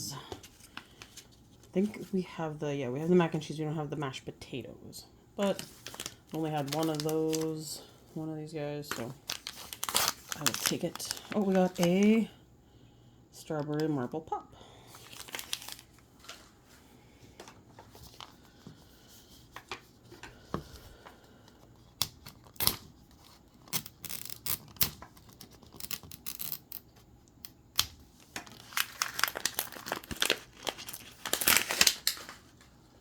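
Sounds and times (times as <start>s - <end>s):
plastic wrappers tearing and crinkling: 5.4s - 7.6s, 8.9s - 12.2s, 15.0s - 16.4s, 28.2s - 32.7s.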